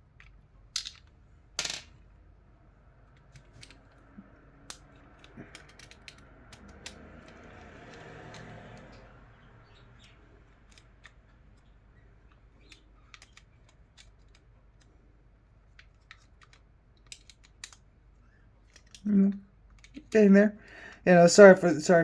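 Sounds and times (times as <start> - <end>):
screwdriver clicks and taps: 4.7 - 8.9.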